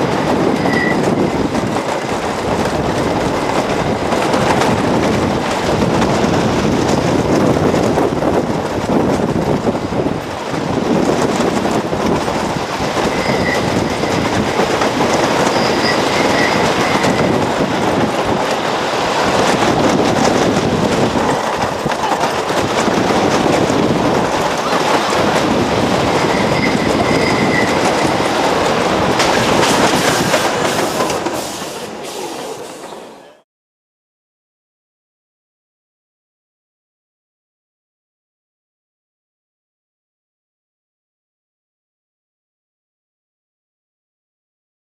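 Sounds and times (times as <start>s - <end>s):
roller coaster wheels clattering: 0.0s - 33.4s
high wheel squeals: 0.5s - 1.4s, 13.0s - 14.4s, 15.4s - 17.4s, 26.1s - 28.4s, 29.9s - 33.4s.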